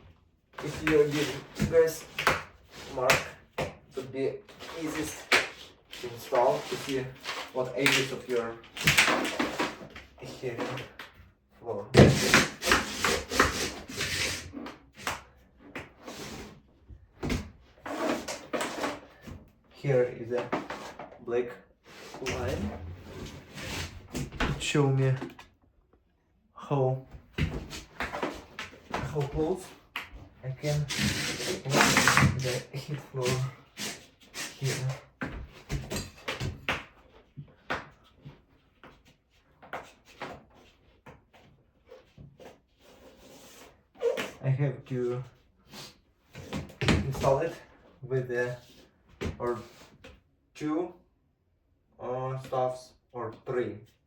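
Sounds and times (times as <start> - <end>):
scraping and rubbing on floor: 0.6 - 11.2, 11.9 - 21.2, 21.8 - 25.4, 27.2 - 44.4.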